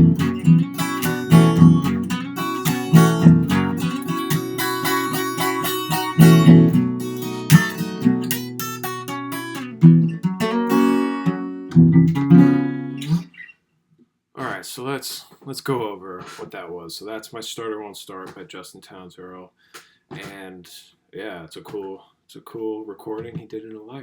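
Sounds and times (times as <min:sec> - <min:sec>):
fingerstyle acoustic guitar: 0:00.0 - 0:13.5.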